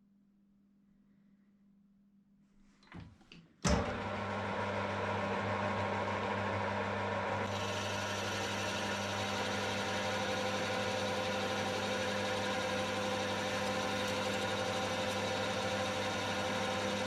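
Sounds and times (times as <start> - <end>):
lathe motor humming: 3.7 - 17.0.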